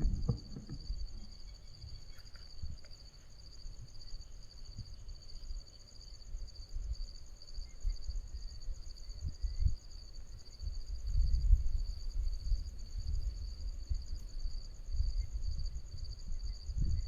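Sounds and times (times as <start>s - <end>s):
low rumbling noise: 0.0s - 1.5s
insects trilling: 0.0s - 17.0s.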